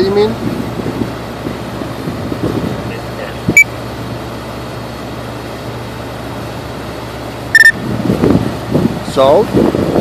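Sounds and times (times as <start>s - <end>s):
high-pitched electronic beep: 7.6s - 7.8s.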